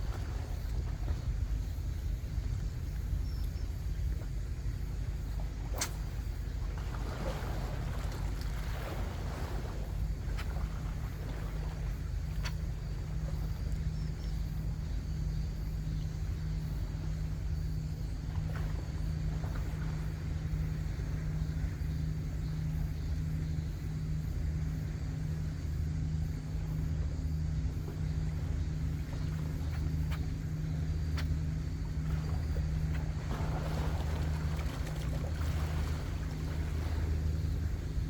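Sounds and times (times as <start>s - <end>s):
boat engine idling: 0.0s - 38.0s
faint ticks: 2.4s - 4.4s, 5.7s - 6.4s, 12.2s - 14.6s, 27.8s - 33.1s.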